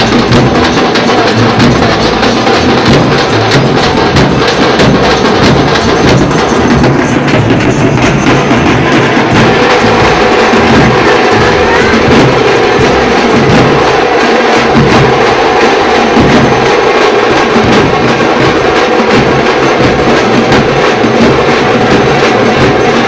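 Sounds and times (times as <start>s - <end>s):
drums in fast driving rhythm: 0.0s - 23.0s.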